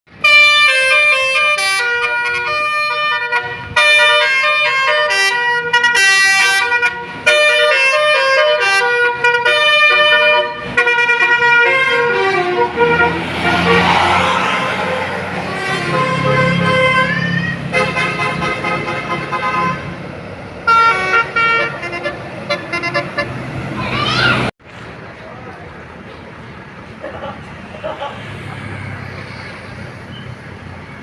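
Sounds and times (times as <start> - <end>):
bus horn playing a tune: 0.1 - 23.6.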